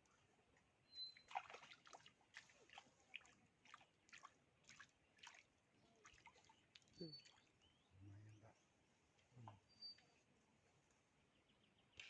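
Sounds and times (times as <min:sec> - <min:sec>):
water splashing and dripping: 0:01.2 - 0:07.5.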